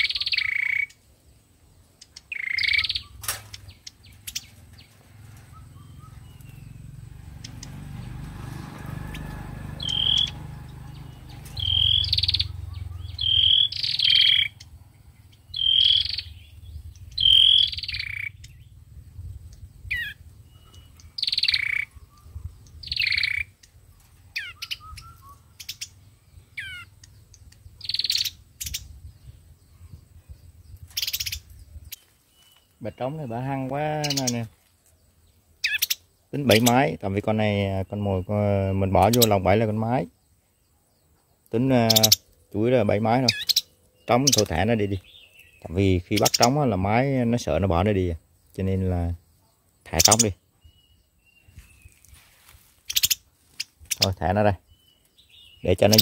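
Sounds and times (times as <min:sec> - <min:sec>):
songbirds chirping: 0:00.0 - 0:56.0
faint low rumble: 0:17.8 - 0:21.2.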